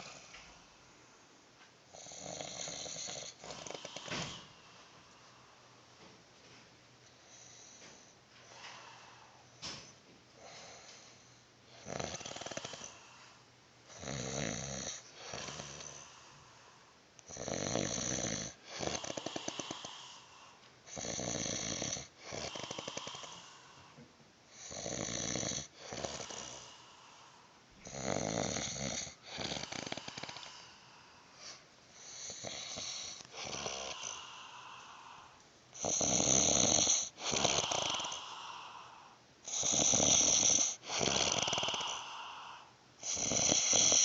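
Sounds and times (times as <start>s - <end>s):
faint breaths: 0.0s - 1.4s, 2.0s - 21.2s, 22.0s - 24.8s, 25.6s - 44.0s
man snoring heavily: 2.0s - 4.5s, 11.8s - 13.0s, 13.9s - 16.1s, 17.3s - 20.3s, 20.9s - 23.6s, 24.6s - 26.9s, 27.8s - 30.7s, 32.0s - 44.0s.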